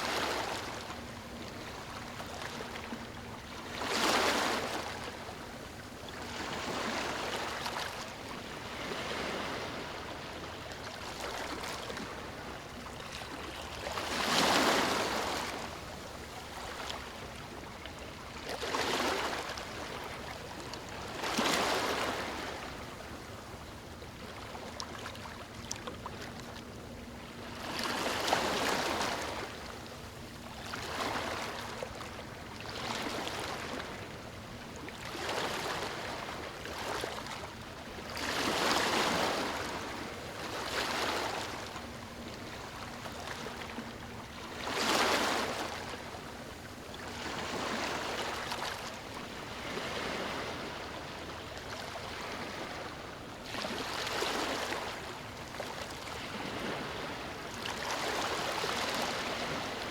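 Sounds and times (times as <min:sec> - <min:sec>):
ocean waves breaking: 0:06.3 - 0:17.2, 0:27.2 - 0:34.2, 0:34.8 - 0:59.9.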